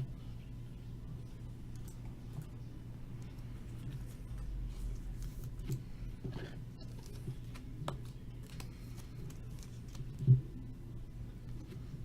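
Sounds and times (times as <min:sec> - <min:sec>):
steady low hum: 0:00.0 - 0:12.0
cards clicking and rustling: 0:06.9 - 0:10.2.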